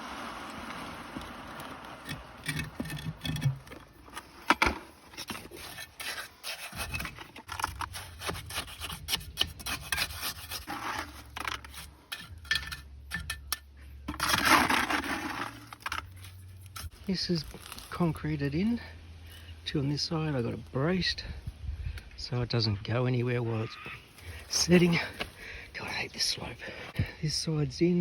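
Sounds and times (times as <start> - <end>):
hand tool scraping soil: 0.9 - 12.7, 14.0 - 18.2, 23.6 - 26.9.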